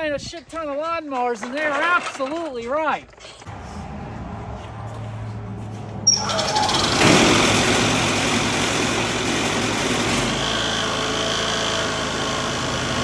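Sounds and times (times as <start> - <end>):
engine starting and running: 3.5 - 13.0.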